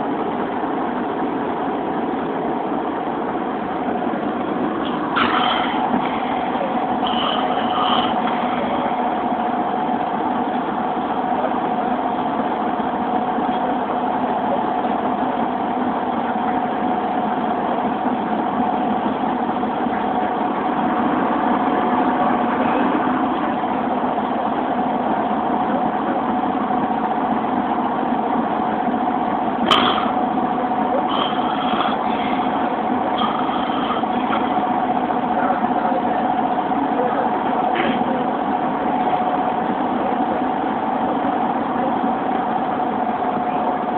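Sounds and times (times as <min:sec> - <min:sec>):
van engine drone from inside: 0:00.0 - 0:43.9.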